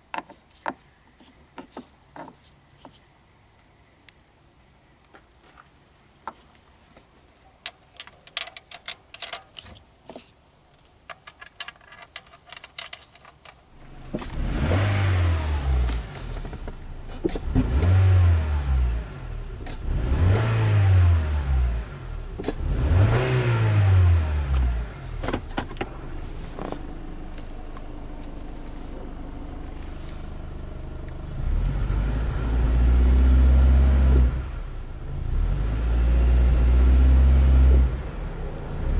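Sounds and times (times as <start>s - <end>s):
car engine revving: 13.8s - 38.9s.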